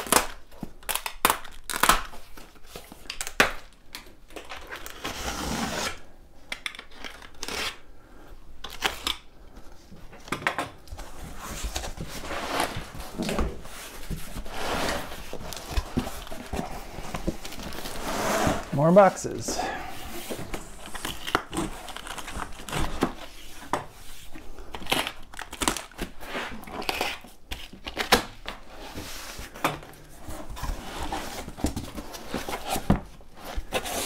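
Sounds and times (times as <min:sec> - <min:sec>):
packing tape tearing: 0:00.0 - 0:06.0, 0:06.6 - 0:07.8, 0:20.5 - 0:23.3, 0:24.7 - 0:28.6
cardboard flaps scraping and rustling: 0:11.0 - 0:18.9, 0:25.8 - 0:34.0.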